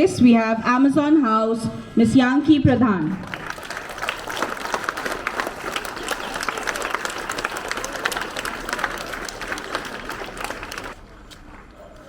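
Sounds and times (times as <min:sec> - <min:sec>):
audience applauding: 0:03.2 - 0:11.0.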